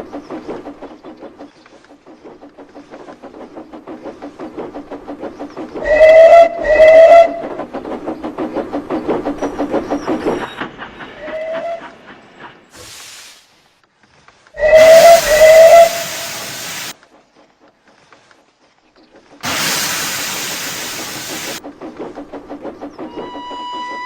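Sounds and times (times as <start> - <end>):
steam locomotive chuffing: 0.0 - 13.7, 14.6 - 17.7, 19.3 - 24.0
train whistle blasts: 5.8 - 7.4, 14.6 - 16.9.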